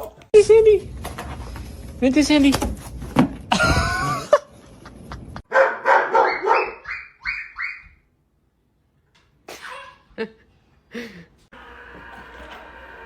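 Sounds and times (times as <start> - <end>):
small dog yapping: 5.6 - 7.8.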